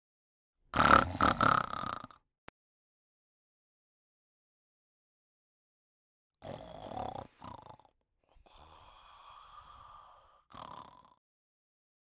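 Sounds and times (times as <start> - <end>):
person snoring: 0.7 - 2.2, 6.4 - 11.2.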